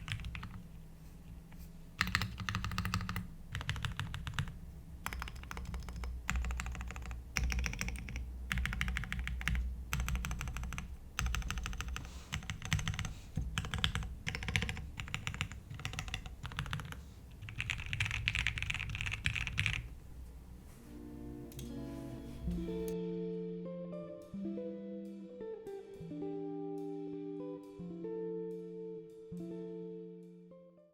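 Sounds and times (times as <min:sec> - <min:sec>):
mechanical keyboard typing: 0:00.0 - 0:00.6, 0:02.0 - 0:19.9.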